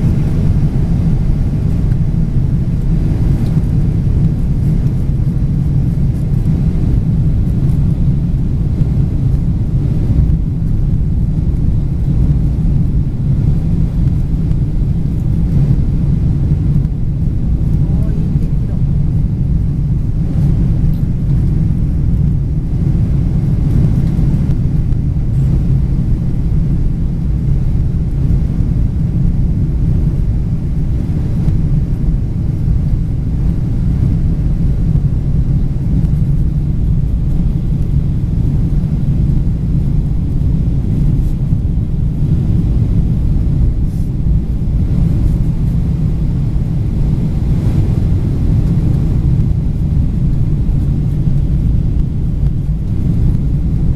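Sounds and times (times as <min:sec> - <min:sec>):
jet airliner cabin rumble: 0:00.0 - 0:53.9.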